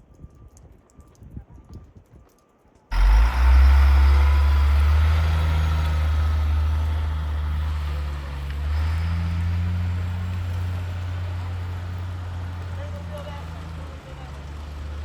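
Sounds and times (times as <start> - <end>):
faint clicks: 0.0 - 2.9
loud engine rumble with hiss: 2.9 - 15.0.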